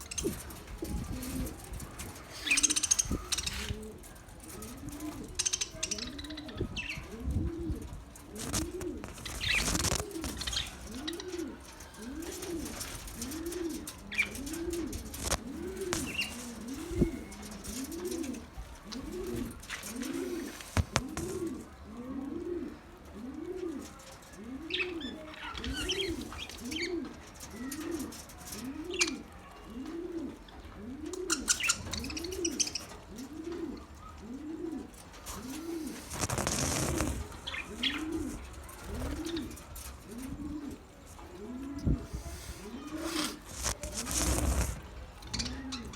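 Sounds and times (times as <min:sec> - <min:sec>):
small birds chirping: 0:00.0 - 0:07.4, 0:08.4 - 0:18.2, 0:31.3 - 0:33.2, 0:35.0 - 0:40.2, 0:41.8 - 0:45.9
dove cooing: 0:00.0 - 0:45.9.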